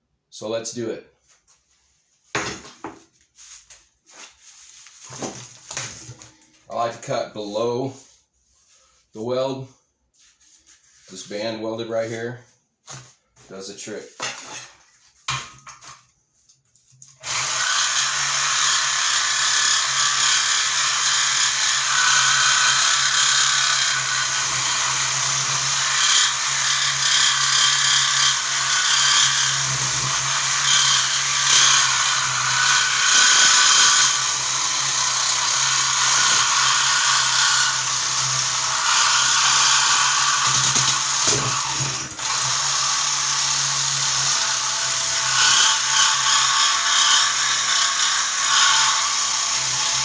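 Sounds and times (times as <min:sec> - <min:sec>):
reciprocating saw cutting steel: 0:17.2 - 0:50.0.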